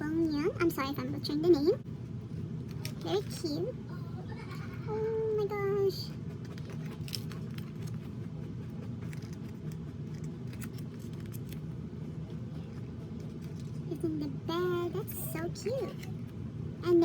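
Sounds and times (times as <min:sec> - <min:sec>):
low background hum: 0:00.0 - 0:17.0.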